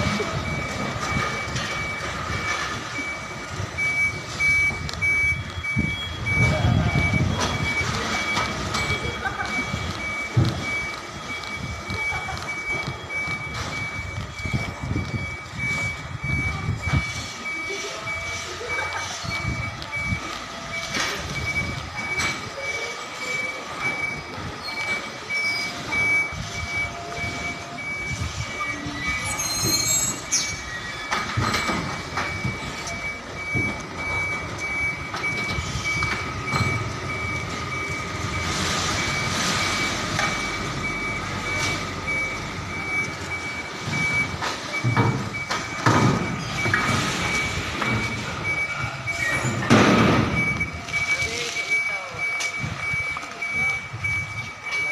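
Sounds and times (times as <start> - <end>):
truck engine running: 0.0 - 54.9
truck reversing alarm beeping: 0.0 - 54.9
high squeal: 28.6 - 31.6.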